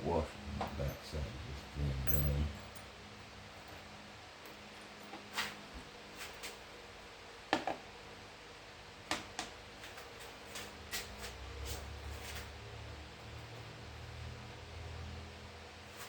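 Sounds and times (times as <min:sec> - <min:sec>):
low hum: 0:00.0 - 0:03.8
metal hardware clicking together: 0:02.1 - 0:02.8.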